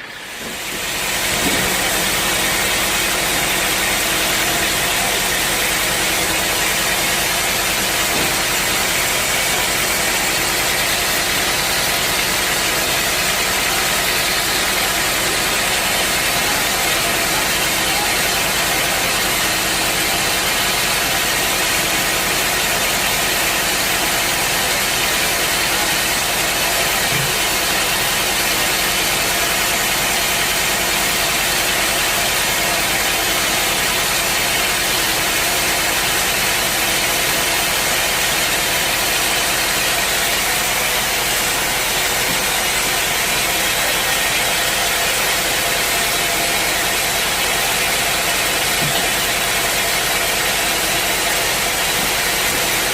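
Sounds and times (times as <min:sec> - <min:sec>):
sawmill machinery droning: 0:00.0 - 0:52.9.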